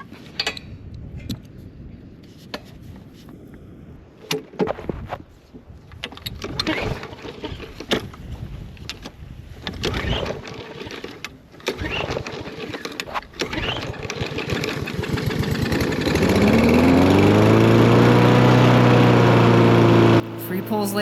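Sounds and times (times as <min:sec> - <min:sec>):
lawn mower engine starting: 0:09.8 - 0:20.7
lawn mower engine running: 0:13.8 - 0:21.0.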